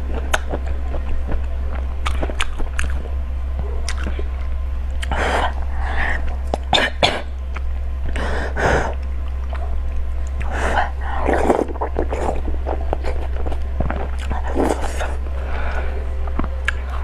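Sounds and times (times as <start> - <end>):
person chewing food: 0.0 - 3.2, 3.8 - 17.0.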